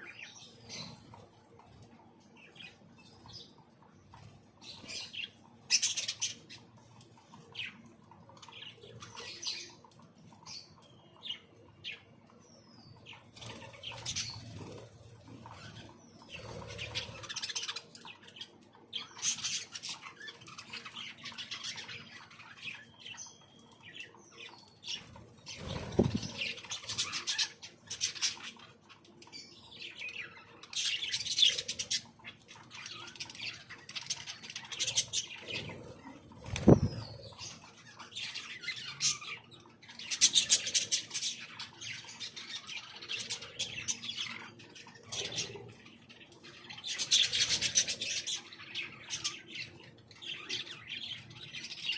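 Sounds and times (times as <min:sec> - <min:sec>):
birds chirping and squawking: 0:00.0 - 0:51.9
wing flutters: 0:25.1 - 0:27.4, 0:35.5 - 0:37.4.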